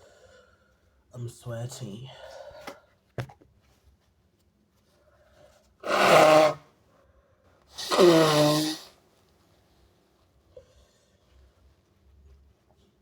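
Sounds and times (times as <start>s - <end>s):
person sneezing: 5.8s - 6.6s, 7.8s - 8.9s.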